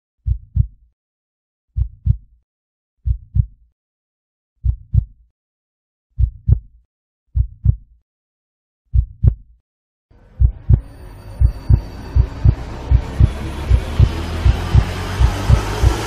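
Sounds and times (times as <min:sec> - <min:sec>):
heartbeat thumps: 0:00.2 - 0:00.8, 0:01.8 - 0:02.3, 0:03.0 - 0:03.6, 0:04.6 - 0:05.2, 0:06.2 - 0:07.9, 0:08.9 - 0:09.6, 0:10.4 - 0:16.0
rising hiss and drone: 0:12.0 - 0:16.0.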